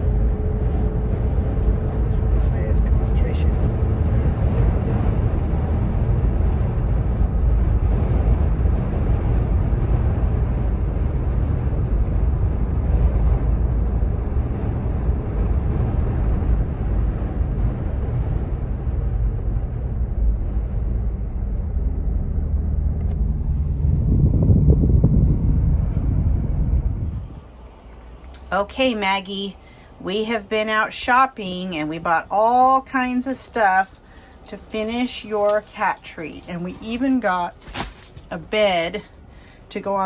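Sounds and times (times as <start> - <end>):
vehicle rumbling along road: 0.0 - 31.2.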